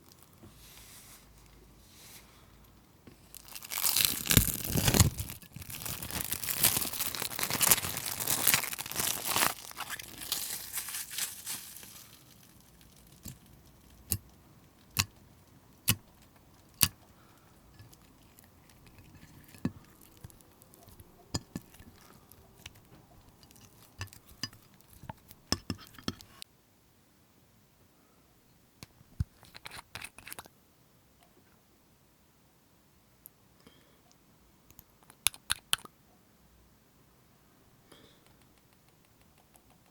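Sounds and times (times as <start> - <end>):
packaging crinkling and tearing: 3.2 - 14.2, 15.9 - 25.2.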